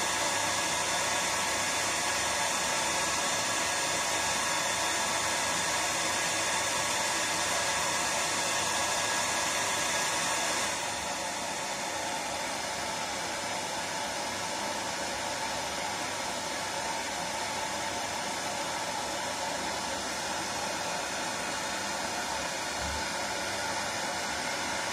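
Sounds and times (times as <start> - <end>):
faint hair dryer whine: 0.0 - 24.9
hair dryer rushing hiss: 0.0 - 24.9.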